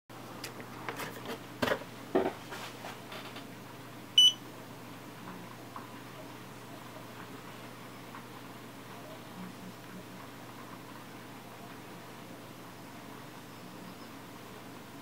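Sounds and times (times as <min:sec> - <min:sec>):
steady low hum: 0:00.1 - 0:15.0
short electronic beep: 0:04.2 - 0:04.4.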